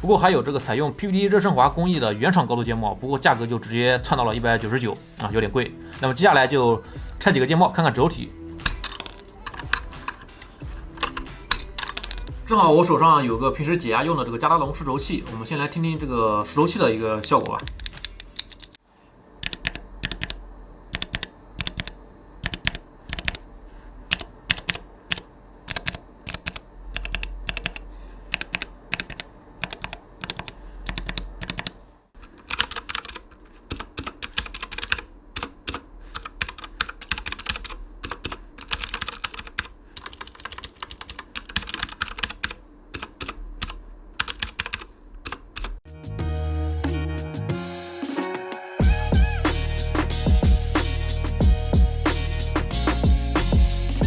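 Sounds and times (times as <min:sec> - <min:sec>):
mechanical keyboard keys clicking: 0:17.3 - 0:18.8, 0:19.4 - 0:23.4, 0:24.1 - 0:45.8.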